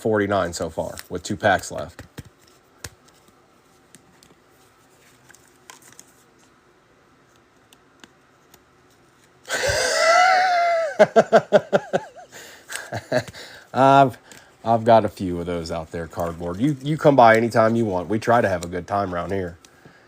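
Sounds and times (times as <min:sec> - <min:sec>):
trading cards clicking and rustling: 0:00.4 - 0:06.6, 0:07.2 - 0:09.8, 0:12.5 - 0:19.9.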